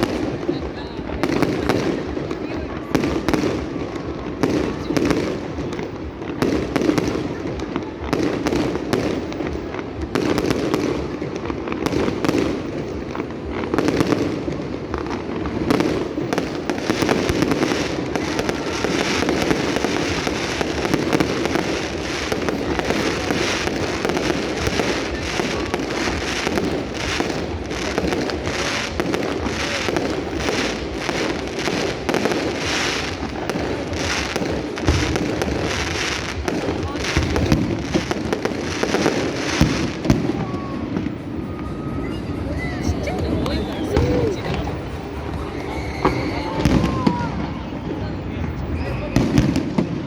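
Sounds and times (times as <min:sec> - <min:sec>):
fireworks bangs and crackles: 0:00.0 - 0:50.0.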